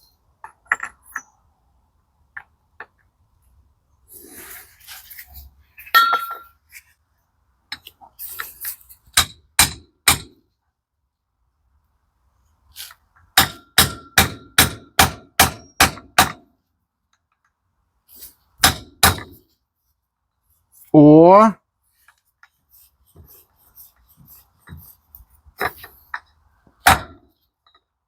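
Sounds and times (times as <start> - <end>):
hammer clanging on steel: 5.9 - 6.6.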